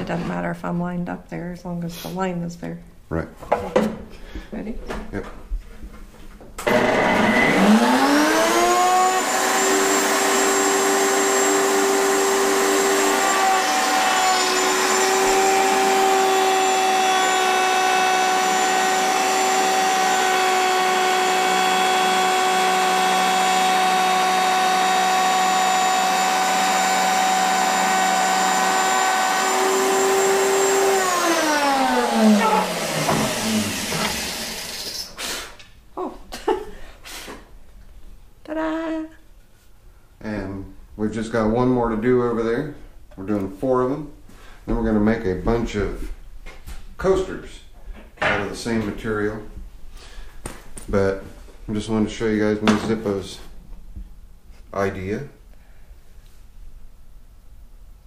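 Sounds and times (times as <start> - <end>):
router motor whining: 6.6 - 35.1.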